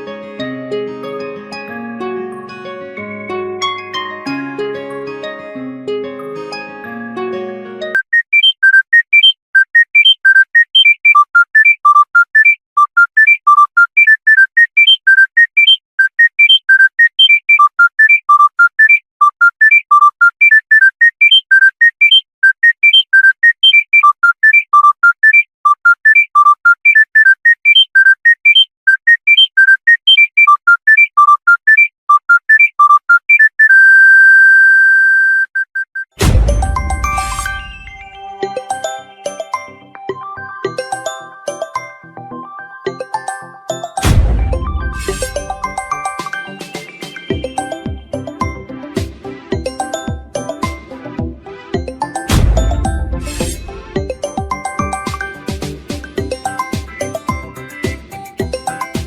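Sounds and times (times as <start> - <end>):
mobile phone ringtone beeps: 8.0 - 48.7, 49.6 - 50.8, 51.8 - 59.0.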